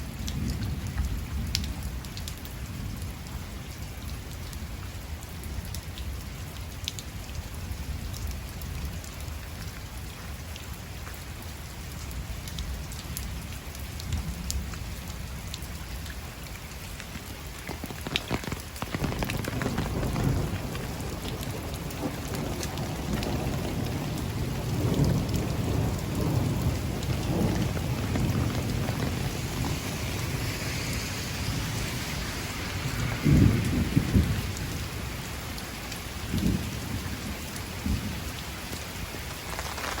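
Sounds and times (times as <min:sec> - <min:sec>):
heavy rain falling: 0:00.0 - 0:40.0
thunder rumbling: 0:17.0 - 0:35.4.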